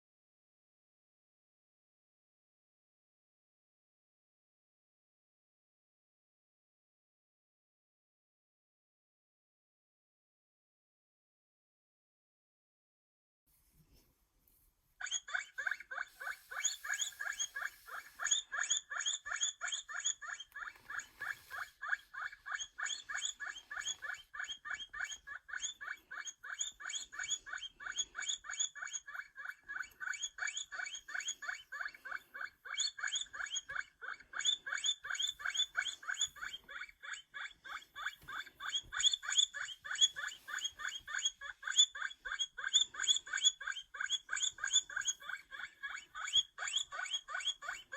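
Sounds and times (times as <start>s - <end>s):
guinea pig squeaking: 15.0s - 47.9s.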